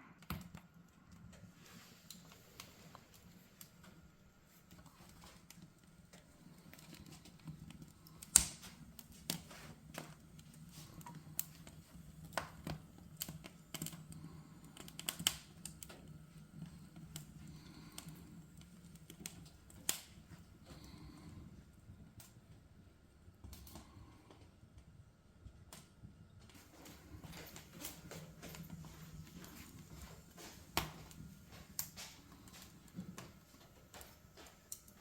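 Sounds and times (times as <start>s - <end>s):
wood fire crackling: 0.1s - 35.0s.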